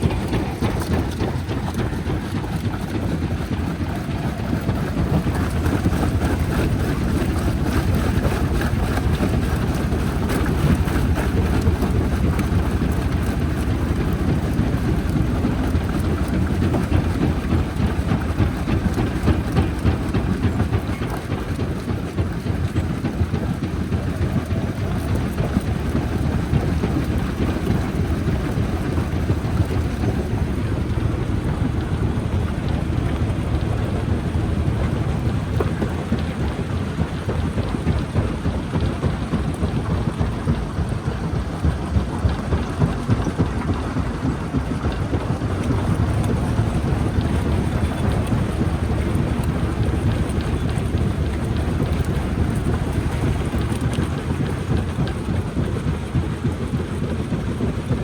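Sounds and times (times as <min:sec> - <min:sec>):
jaw crusher rumbling: 0:00.0 - 0:03.6, 0:25.5 - 0:40.8, 0:42.2 - 0:54.8.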